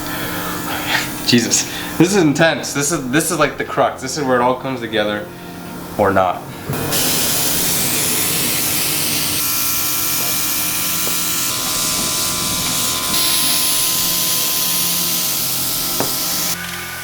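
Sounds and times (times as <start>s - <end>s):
paint sprayer hissing: 6.7s - 17.0s.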